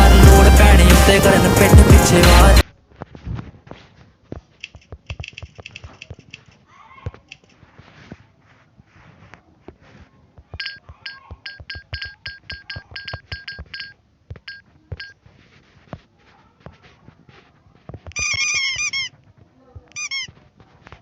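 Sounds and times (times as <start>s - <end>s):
keyboard typing beeps: 10.6s - 15.2s.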